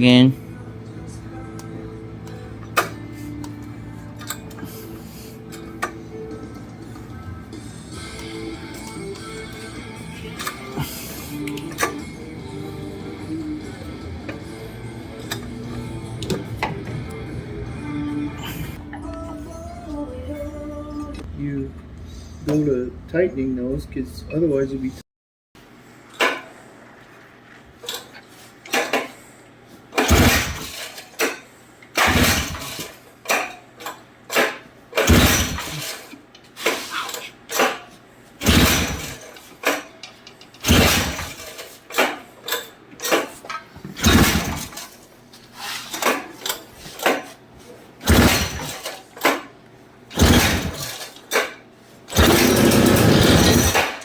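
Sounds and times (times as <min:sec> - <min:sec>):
bursts of mechanical engine noise: 0:30.0 - 0:30.9, 0:32.0 - 0:33.0, 0:35.0 - 0:36.1, 0:38.4 - 0:39.3, 0:40.6 - 0:41.7, 0:44.0 - 0:44.9, 0:48.0 - 0:49.0, 0:50.1 - 0:51.1, 0:52.1 - 0:54.0.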